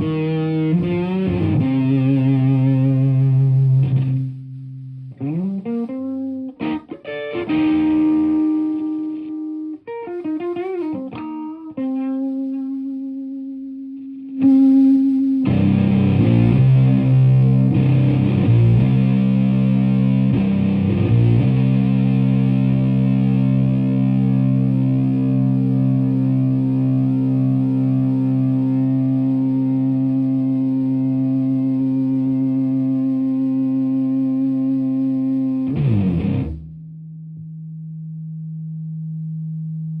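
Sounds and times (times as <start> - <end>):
distorted electric guitar: 0.0 - 36.8.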